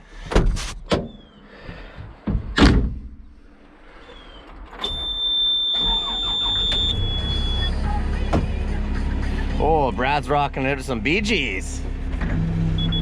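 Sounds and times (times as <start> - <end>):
knocks and thumps of climbing: 0.0 - 3.4
cab door clunking and latching: 2.0 - 3.3.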